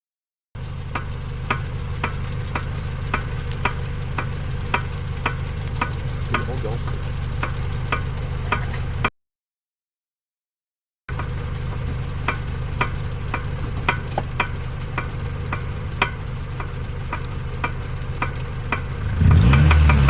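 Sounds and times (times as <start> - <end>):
steady low rumble: 0.6 - 9.1, 11.1 - 19.2
driveshaft metallic clicks: 11.1 - 18.9.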